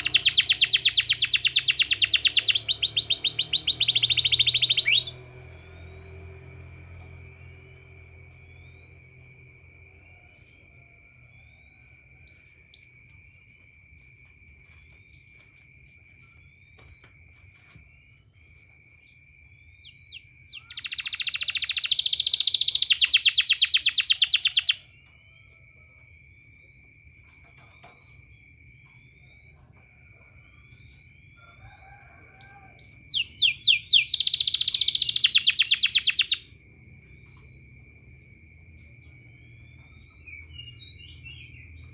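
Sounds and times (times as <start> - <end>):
canary singing: 0.0 - 13.1, 19.1 - 25.4, 31.7 - 41.9.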